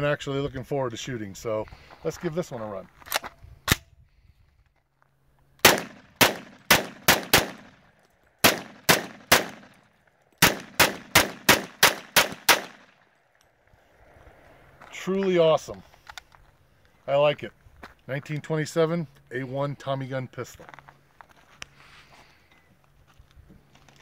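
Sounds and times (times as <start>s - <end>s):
gunshots: 5.6s - 7.8s, 8.4s - 9.8s, 10.4s - 13.0s.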